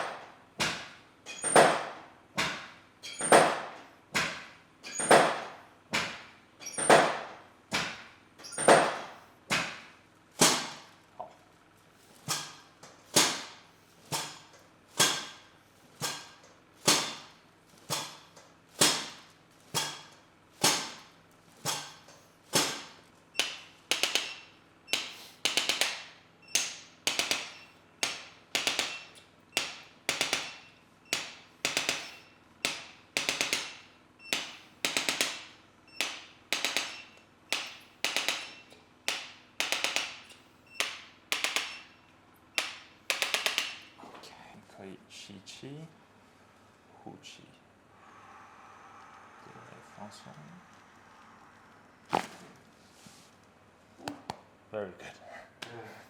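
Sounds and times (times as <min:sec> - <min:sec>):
sharp rhythmic taps: 0:23.4 - 0:41.8, 0:42.6 - 0:43.9.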